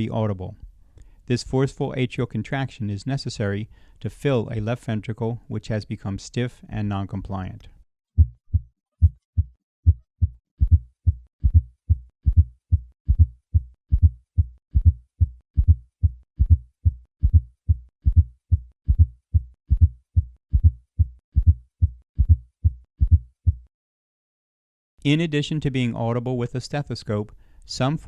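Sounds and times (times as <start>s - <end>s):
heartbeat through stethoscope: 8.2s - 23.7s.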